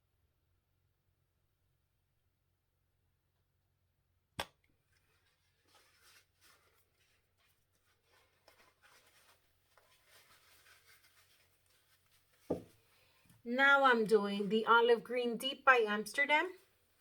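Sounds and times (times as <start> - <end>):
hands rustling with cups and tools: 4.9 - 13.4.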